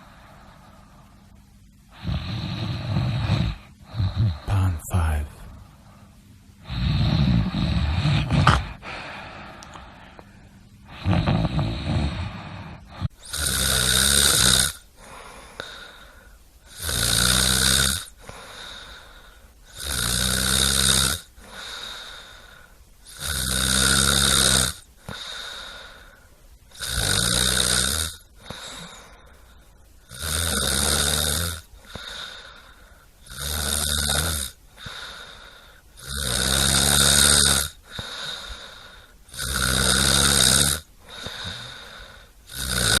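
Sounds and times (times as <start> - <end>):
person snoring loudly: 1.9 - 5.1, 6.6 - 9.2, 10.9 - 15.9, 16.7 - 19.0, 19.7 - 22.2, 23.0 - 25.9, 26.7 - 29.1, 30.1 - 32.5, 33.2 - 43.0
rough breaths: 5.5 - 13.2, 18.2 - 19.6, 21.4 - 22.8, 25.0 - 26.5, 28.4 - 29.9, 31.8 - 33.2, 34.8 - 35.9, 37.8 - 39.2, 41.0 - 42.4.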